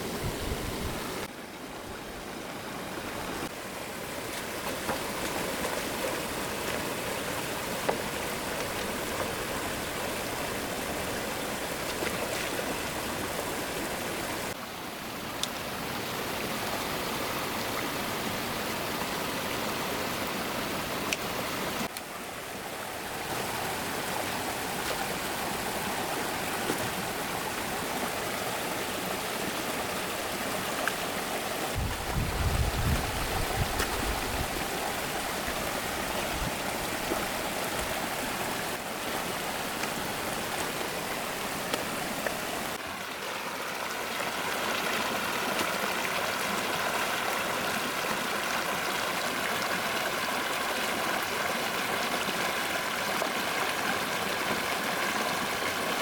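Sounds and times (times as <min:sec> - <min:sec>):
stream water running: 0:00.0 - 0:56.0.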